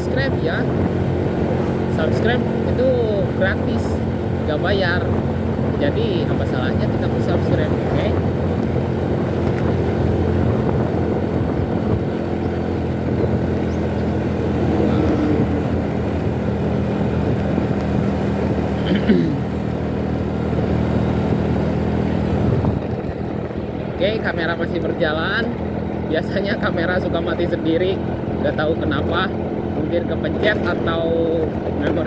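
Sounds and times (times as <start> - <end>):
wind noise: 0.0 - 26.2
motorcycle engine drone: 0.0 - 32.0
road noise: 0.0 - 32.0.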